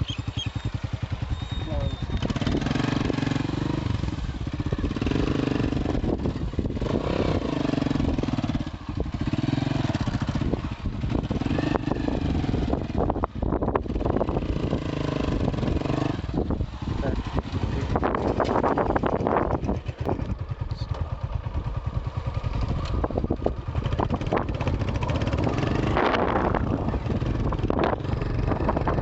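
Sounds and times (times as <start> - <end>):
motorcycle engine revving: 0.0 - 29.0
road knocks and rattles: 15.6 - 21.1.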